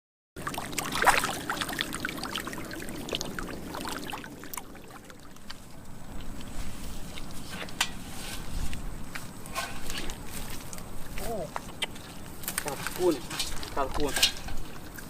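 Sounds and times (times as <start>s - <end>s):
muddy water splashing: 0.4s - 6.6s.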